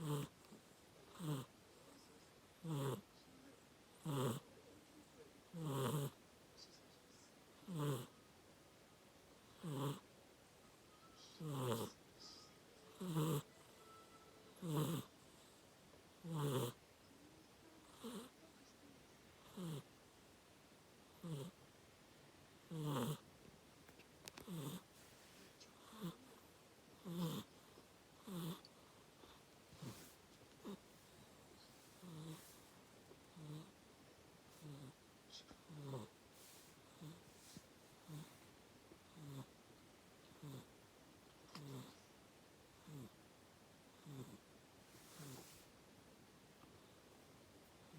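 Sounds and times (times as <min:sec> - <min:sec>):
snoring: 0:00.0 - 0:00.4, 0:01.1 - 0:01.5, 0:02.6 - 0:03.0, 0:04.0 - 0:04.4, 0:05.5 - 0:06.2, 0:07.6 - 0:08.1, 0:09.5 - 0:10.0, 0:11.4 - 0:12.0, 0:12.9 - 0:13.6, 0:14.6 - 0:15.1, 0:16.2 - 0:16.8, 0:17.9 - 0:18.3, 0:19.4 - 0:19.9, 0:21.2 - 0:21.6, 0:22.7 - 0:23.2, 0:24.3 - 0:24.9, 0:25.8 - 0:26.3, 0:27.0 - 0:27.5, 0:28.2 - 0:28.7, 0:32.0 - 0:32.6, 0:33.3 - 0:33.7, 0:34.6 - 0:35.0, 0:35.7 - 0:36.1, 0:38.0 - 0:38.4, 0:39.1 - 0:39.5, 0:40.3 - 0:40.7, 0:41.5 - 0:42.0, 0:42.8 - 0:43.2, 0:44.0 - 0:44.4, 0:45.0 - 0:45.6
person snoring: 0:11.4 - 0:11.9.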